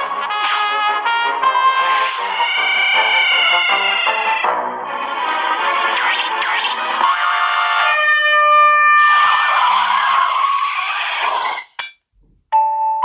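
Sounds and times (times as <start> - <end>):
air horn blaring: 0.1 - 4.6.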